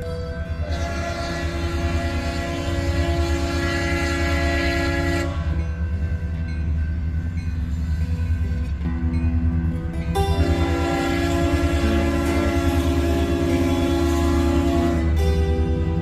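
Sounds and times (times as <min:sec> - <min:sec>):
train rumbling: 0:00.0 - 0:16.0
locomotive air horn: 0:00.5 - 0:05.8, 0:10.4 - 0:16.0.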